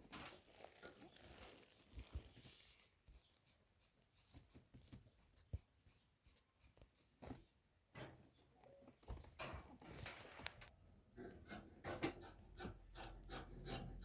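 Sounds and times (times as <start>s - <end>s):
faint hand scraping strokes: 0.4s - 7.2s.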